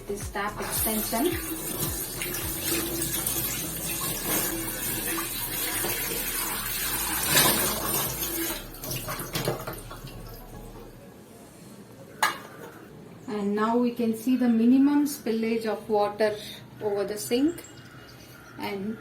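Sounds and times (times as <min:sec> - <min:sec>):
tap water splashing: 0:07.3 - 0:10.6.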